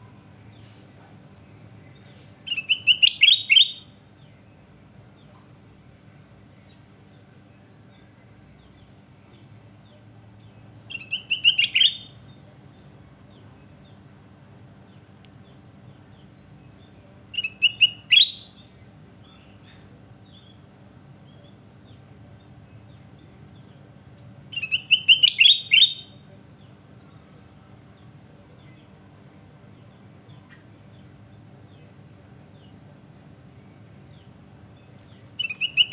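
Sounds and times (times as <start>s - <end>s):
faint steady hum: 0.0s - 35.9s
bird singing whistled notes: 2.5s - 3.9s, 10.9s - 12.2s, 17.3s - 18.7s, 24.5s - 26.2s, 35.4s - 35.9s.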